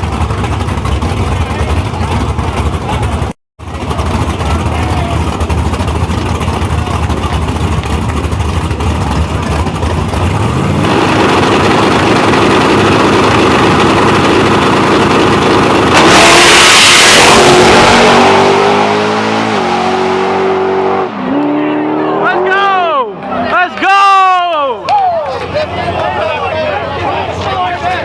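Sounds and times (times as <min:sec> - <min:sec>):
race car engines running loud: 0:00.0 - 0:28.0
loud rush of noise: 0:10.3 - 0:28.0.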